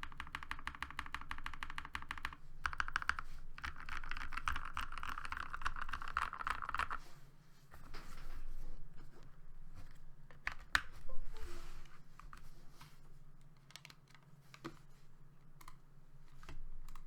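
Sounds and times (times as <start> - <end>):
typing on mechanical keyboard: 0.0 - 7.0, 13.6 - 14.8, 16.4 - 17.0.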